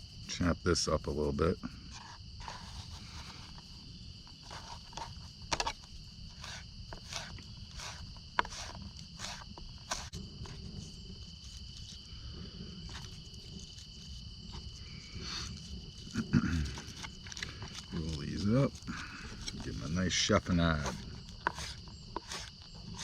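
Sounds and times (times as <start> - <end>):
insect chirring: 0.0 - 23.0
knife chopping herbs on board: 20.8 - 23.0.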